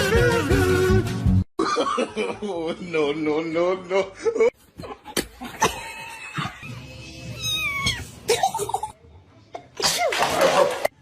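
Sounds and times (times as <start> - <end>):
cat meowing: 7.2 - 8.2.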